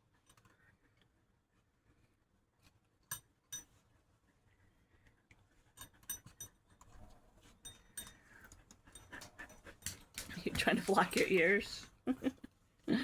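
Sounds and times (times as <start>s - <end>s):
metallic clinks of kitchen timer: 7.6s - 8.2s.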